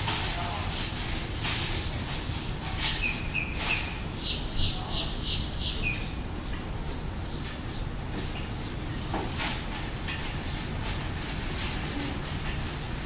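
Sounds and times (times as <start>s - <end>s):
bird chirping: 3.0s - 7.8s.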